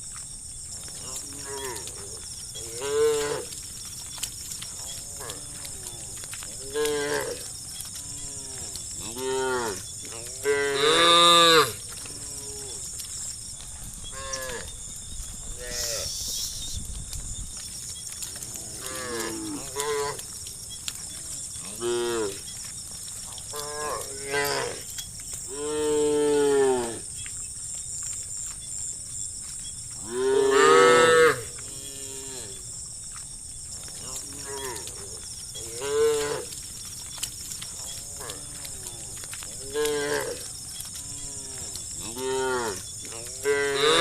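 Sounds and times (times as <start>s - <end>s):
cattle mooing: 41.2s - 44.0s.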